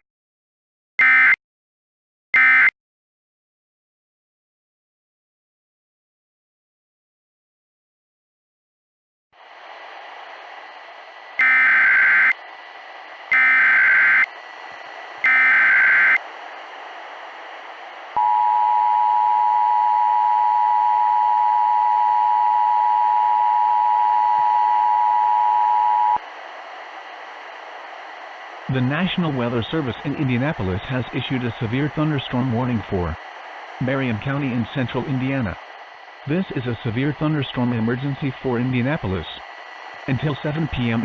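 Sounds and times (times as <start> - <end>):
radio static: 10.4 - 18.2, 23.7 - 41.0.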